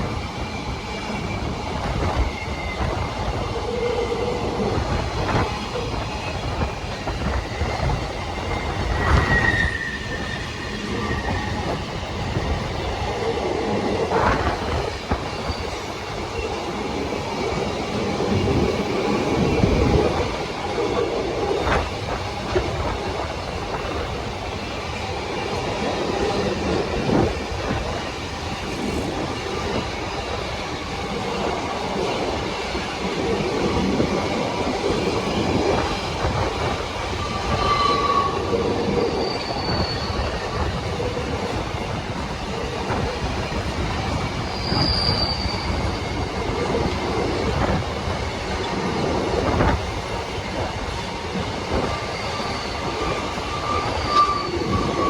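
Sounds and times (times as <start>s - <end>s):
train wheels rumbling on rail: 0.0s - 55.0s
high wheel squeals: 7.3s - 12.0s, 36.4s - 41.0s, 44.4s - 46.4s, 51.7s - 55.0s.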